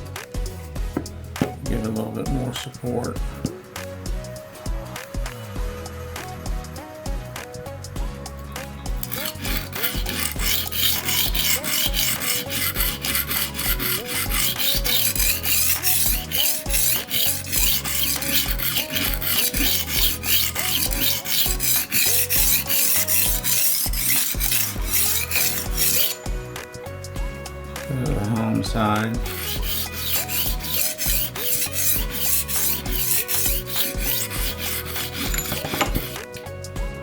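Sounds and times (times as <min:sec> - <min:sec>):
knife sharpener rasping on blade: 0:09.0 - 0:26.3, 0:29.0 - 0:36.5.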